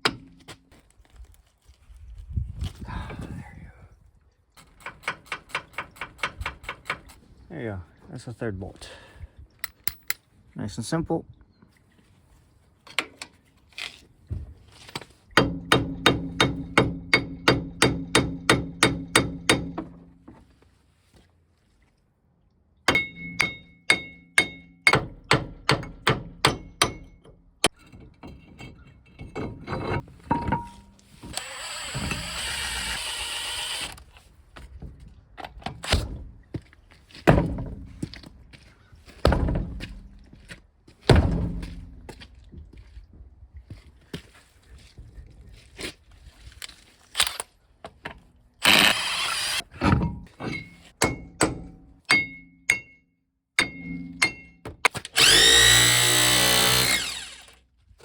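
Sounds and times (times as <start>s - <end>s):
hammer striking steel: 22.9s - 27.8s, 50.2s - 53.0s, 53.6s - 54.7s.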